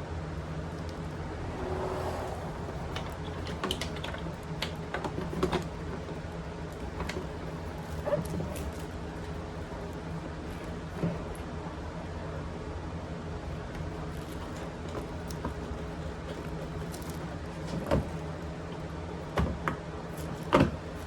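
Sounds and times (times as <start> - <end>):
steady low hum: 0.0 - 5.3.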